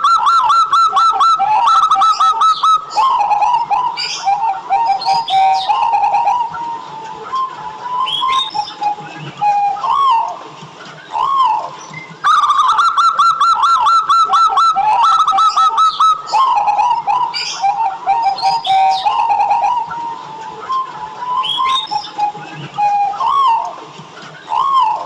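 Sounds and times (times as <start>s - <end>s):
dove cooing: 0.0s - 10.4s, 11.0s - 23.8s, 24.4s - 25.0s.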